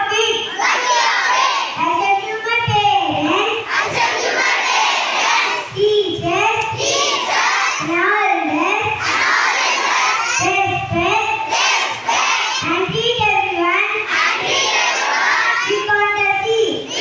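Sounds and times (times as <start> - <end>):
children singing in unison: 0.4 - 1.8, 3.6 - 5.9, 6.5 - 8.0, 8.8 - 12.7, 14.0 - 15.9, 16.7 - 17.0.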